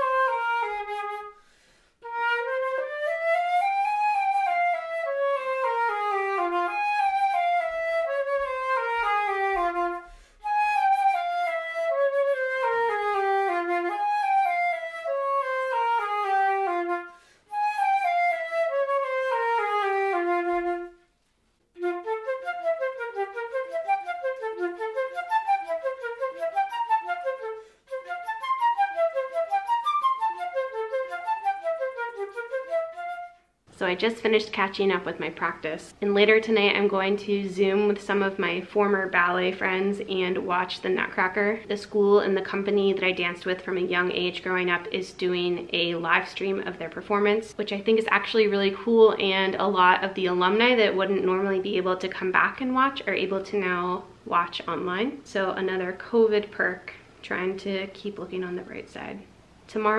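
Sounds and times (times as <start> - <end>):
flute playing: 0.0 - 1.4, 2.0 - 33.6.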